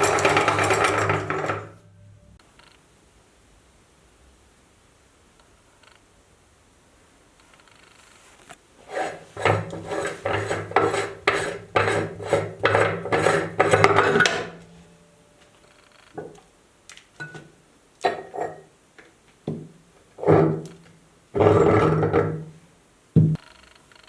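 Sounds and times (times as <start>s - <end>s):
knocks: 23.2s - 23.4s.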